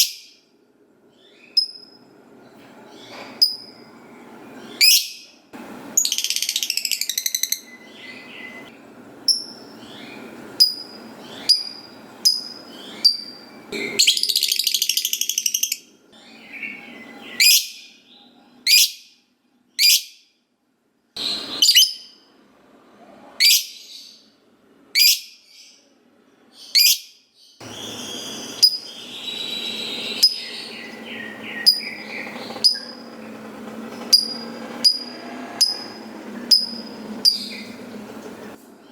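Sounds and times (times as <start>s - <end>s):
high-pitched bird chirps: 1.2s - 2.0s, 4.6s - 5.4s, 6.0s - 8.7s, 9.3s - 19.2s, 19.8s - 20.2s, 21.2s - 22.2s, 23.4s - 24.2s, 25.0s - 25.7s, 26.6s - 33.1s, 34.2s - 37.8s
lovebird chattering trills: 6.0s - 8.6s, 27.7s - 33.2s, 34.1s - 37.9s.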